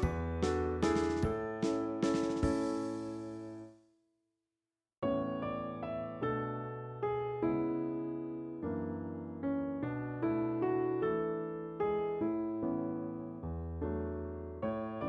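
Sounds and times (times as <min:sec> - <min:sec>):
background music track: 0:00.0 - 0:03.7
gentle electric piano piece: 0:00.0 - 0:03.7, 0:05.0 - 0:15.0.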